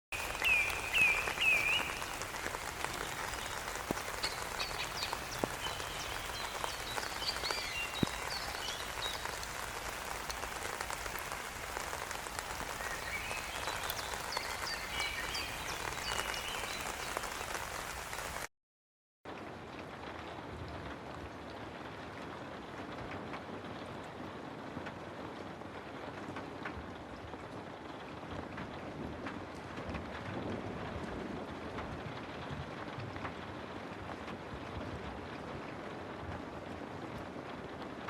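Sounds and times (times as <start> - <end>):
rain hiss: 0.1 - 18.5.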